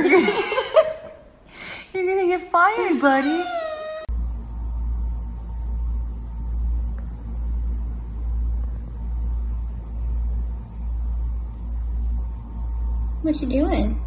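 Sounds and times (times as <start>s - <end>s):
faint steady hum: 0.0s - 14.0s
loud low pulsing rumble: 4.1s - 14.0s.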